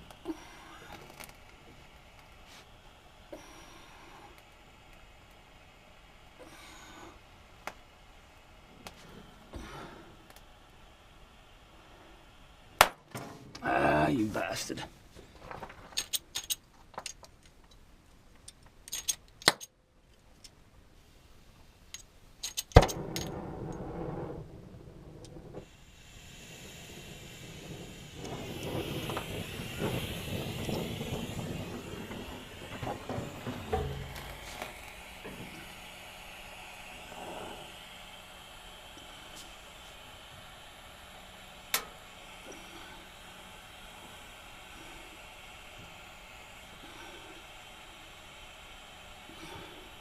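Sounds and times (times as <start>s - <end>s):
cutting torch flame hissing: 0.0s - 16.4s, 21.0s - 50.0s
sharp metal clicks and clinks: 18.4s - 19.7s, 21.9s - 23.3s
torch ignition pop: 22.7s - 23.8s, 25.2s - 38.1s, 41.6s - 43.1s.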